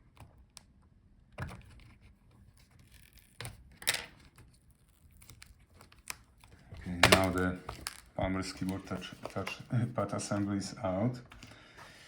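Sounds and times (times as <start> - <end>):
laptop parts knocking and clattering: 6.6 - 9.6.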